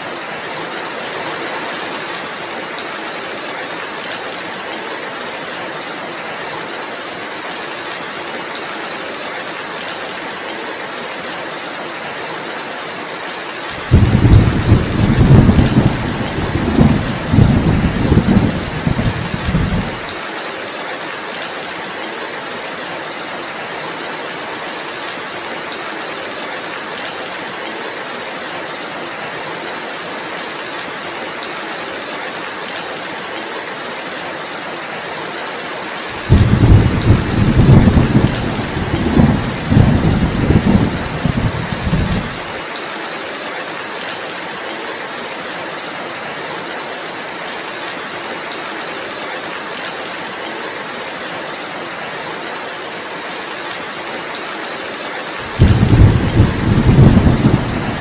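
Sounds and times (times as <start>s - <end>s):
heavy rain hiss: 12.4s - 23.6s, 30.0s - 46.2s, 53.0s - 58.0s
thunder rumbling: 13.8s - 20.1s, 36.2s - 42.5s, 55.5s - 58.0s.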